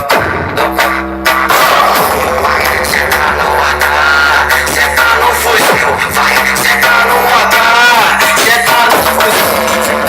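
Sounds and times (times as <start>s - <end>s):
loud song through speakers: 0.0s - 10.0s.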